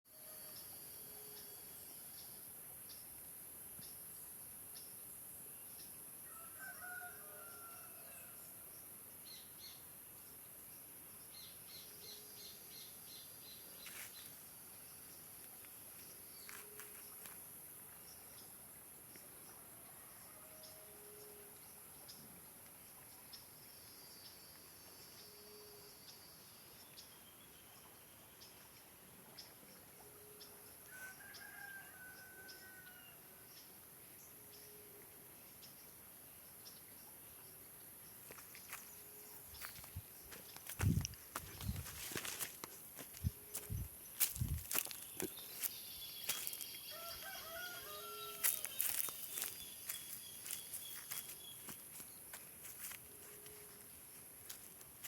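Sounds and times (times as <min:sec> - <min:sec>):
distant rooster crowing: 0:06.2 - 0:08.4, 0:30.9 - 0:33.3, 0:46.3 - 0:49.5
insect hiss: 0:35.4 - 0:55.0.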